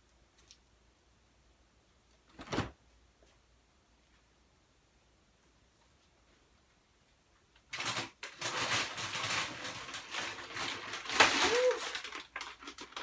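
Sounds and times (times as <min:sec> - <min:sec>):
plastic bag crinkling: 0:07.7 - 0:13.0.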